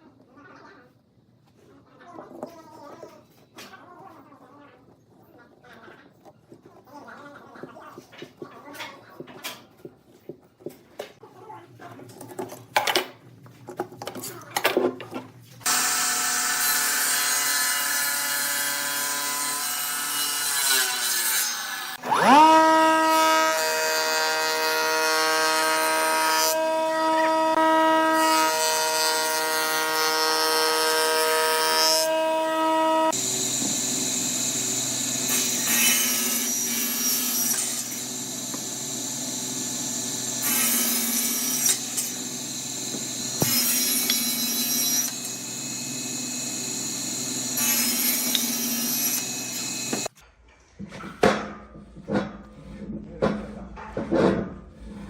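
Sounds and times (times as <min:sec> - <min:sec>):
wood lathe motor whine: 0:22.0 - 0:50.1
tool scraping spinning wood: 0:33.1 - 0:50.2.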